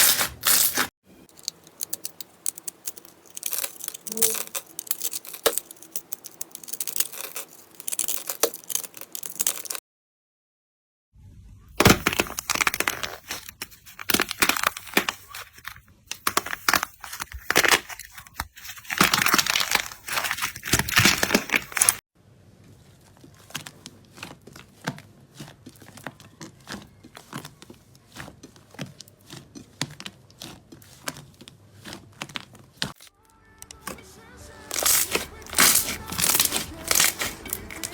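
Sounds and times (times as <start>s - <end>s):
slime crackling and popping: 0.0s - 9.8s, 34.7s - 37.9s.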